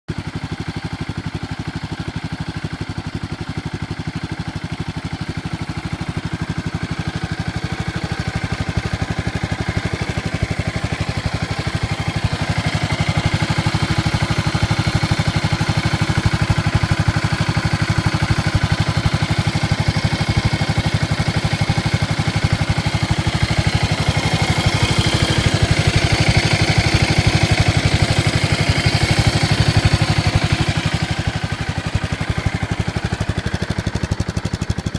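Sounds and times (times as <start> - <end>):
motorcycle engine idling: 0.1 - 34.9.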